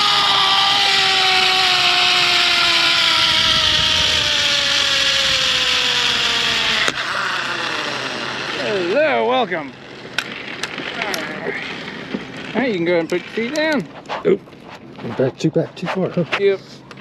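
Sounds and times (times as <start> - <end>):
rushing wind: 0.0 - 7.2
pulleys whining on steel cable: 0.0 - 14.1.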